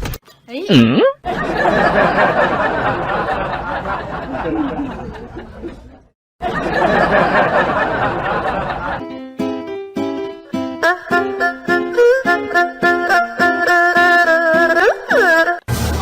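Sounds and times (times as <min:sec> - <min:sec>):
people chattering and laughing: 0:01.2 - 0:09.0.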